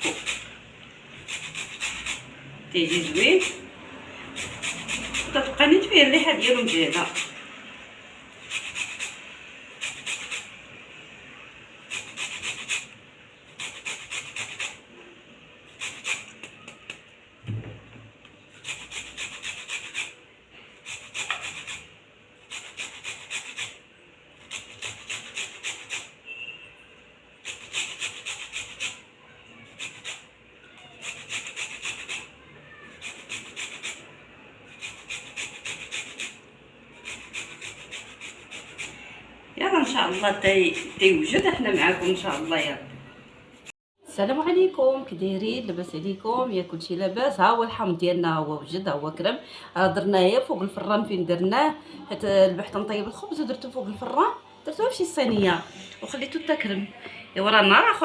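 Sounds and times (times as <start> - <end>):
peel rasping on a grater: 0.0 - 0.6, 1.2 - 7.4, 8.4 - 10.6, 11.8 - 14.8, 15.7 - 16.6, 18.6 - 20.2, 20.8 - 23.8, 24.4 - 26.2, 27.4 - 34.1, 34.7 - 42.8.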